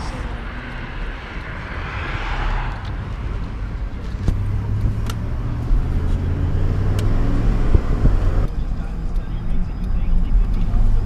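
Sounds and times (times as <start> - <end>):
car engine running: 3.4 - 11.0.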